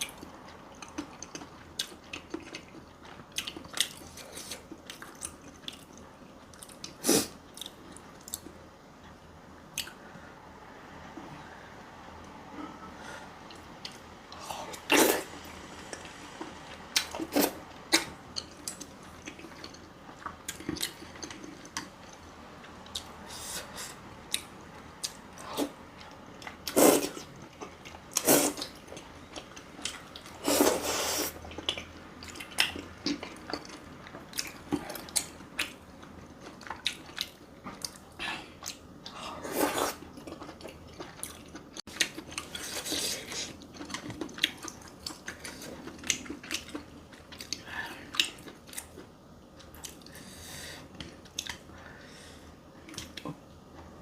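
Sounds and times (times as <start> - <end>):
person chewing food: 0.0 - 10.0, 13.5 - 54.0.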